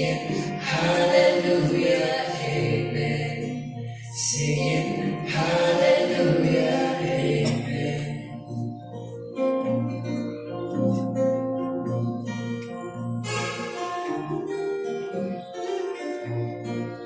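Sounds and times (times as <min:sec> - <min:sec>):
group singing worship song: 0:00.0 - 0:09.1.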